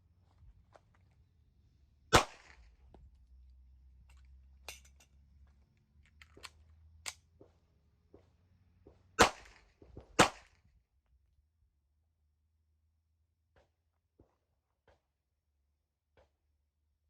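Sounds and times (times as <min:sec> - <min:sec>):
pistol shot with echo: 0:02.1 - 0:02.6, 0:09.2 - 0:09.6, 0:10.2 - 0:10.5.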